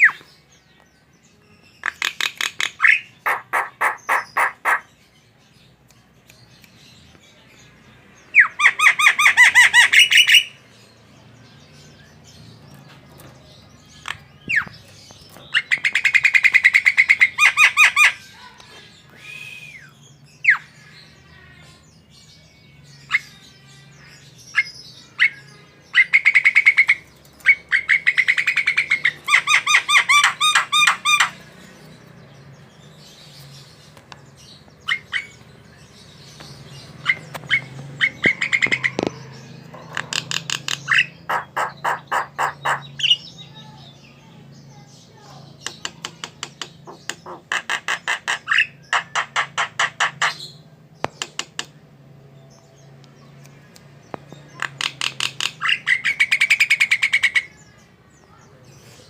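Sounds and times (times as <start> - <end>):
myna calling: 1.8 - 4.9, 37.0 - 43.3.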